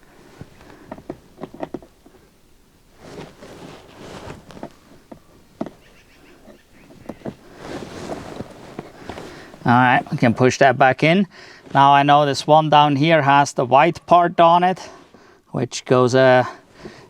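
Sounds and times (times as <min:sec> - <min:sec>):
hands rustling: 0:00.0 - 0:10.4.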